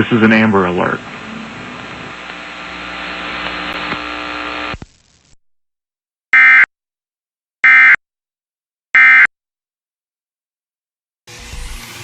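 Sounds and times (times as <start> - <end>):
steady hiss and hum: 0.0 - 5.3.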